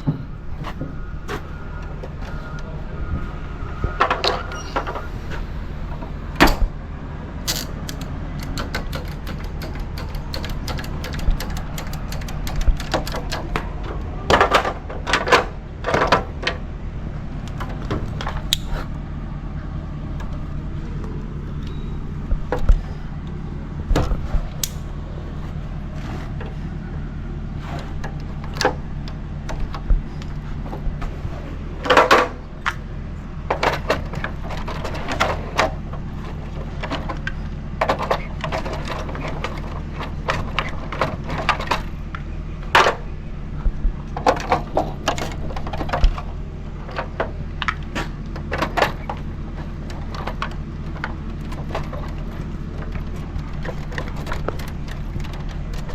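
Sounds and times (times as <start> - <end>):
steady low hum: 0.0 - 55.9
tools clicking and knocking: 7.4 - 13.7.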